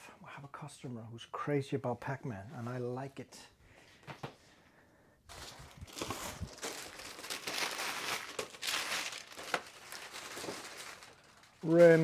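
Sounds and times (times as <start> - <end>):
packaging crinkling and rustling: 5.3 - 12.0.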